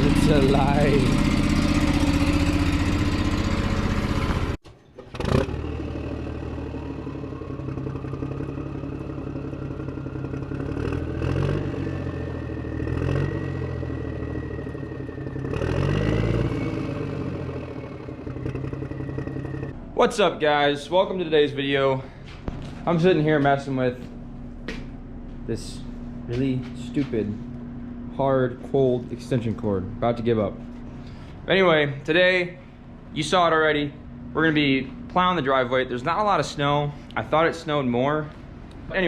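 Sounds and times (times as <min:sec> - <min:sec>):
mower engine revving: 0:00.0 - 0:21.8
thin whine rising in pitch: 0:05.8 - 0:21.8.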